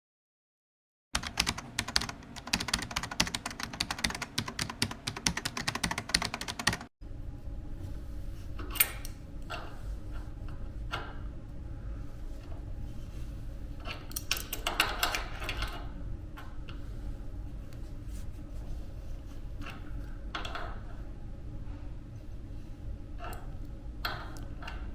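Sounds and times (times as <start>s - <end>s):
rapid irregular clicking: 1.2s - 6.9s.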